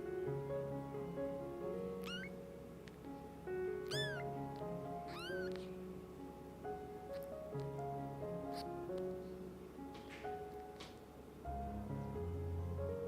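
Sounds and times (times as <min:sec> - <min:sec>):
soft piano music: 0:00.0 - 0:13.0
kitten meowing: 0:02.0 - 0:02.4, 0:03.8 - 0:05.7, 0:08.5 - 0:08.7.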